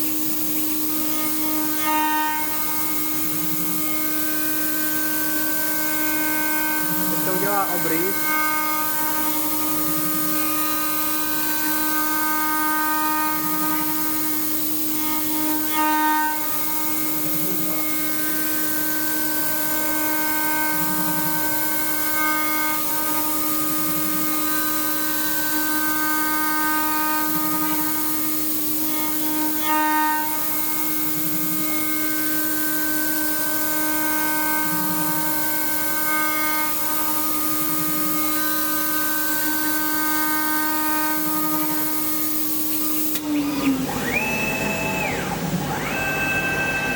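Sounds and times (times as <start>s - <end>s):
milling machine spindle whine: 0.0s - 46.9s
hiss of cutting: 6.1s - 12.0s.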